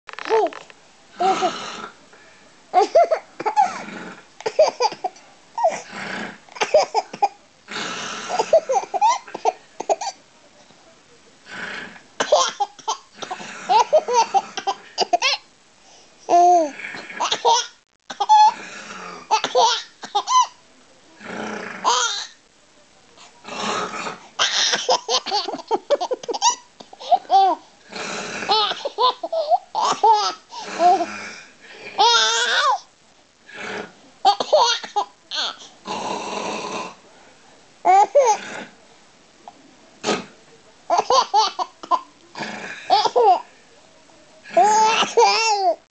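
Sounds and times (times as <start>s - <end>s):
baby laughing: 28.5s - 31.0s, 40.9s - 42.0s.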